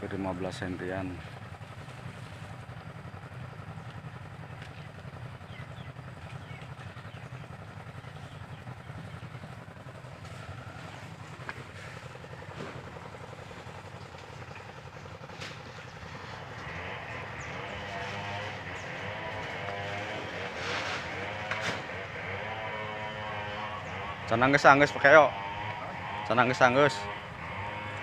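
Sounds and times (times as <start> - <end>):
engine running steadily: 0.0 - 28.0.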